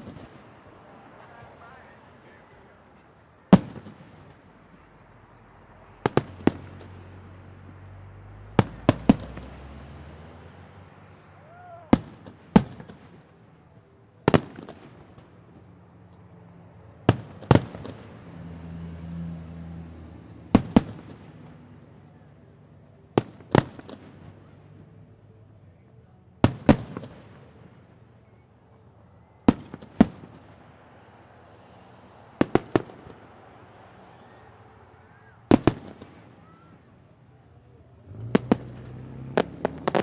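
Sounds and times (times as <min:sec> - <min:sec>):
fireworks bangs: 0:00.0 - 0:04.9, 0:05.8 - 0:07.4, 0:08.5 - 0:13.4, 0:14.2 - 0:15.7, 0:17.0 - 0:18.5, 0:20.2 - 0:22.0, 0:23.2 - 0:24.6, 0:26.4 - 0:28.4, 0:29.2 - 0:40.0.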